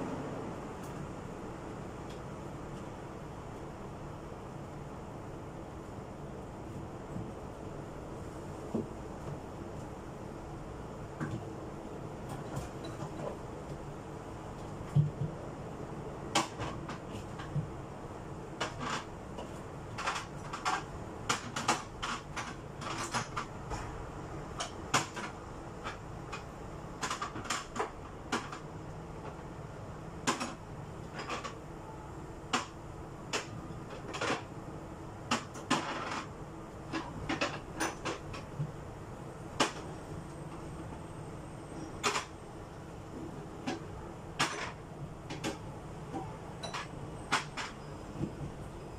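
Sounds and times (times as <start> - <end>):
steady low hum: 0.0 - 48.9
knocks clicks and clatters: 18.6 - 23.9, 30.2 - 30.6, 43.6 - 48.4.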